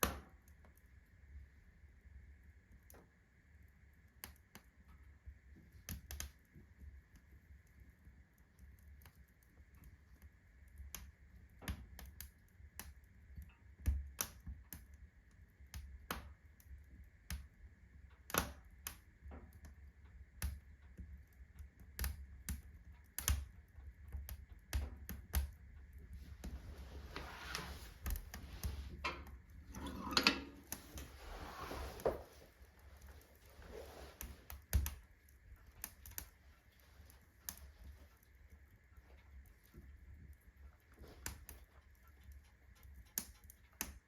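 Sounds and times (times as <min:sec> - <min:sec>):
metal stove ticking and clicking: 0:08.4 - 0:26.6, 0:27.9 - 0:31.2, 0:34.5 - 0:44.0.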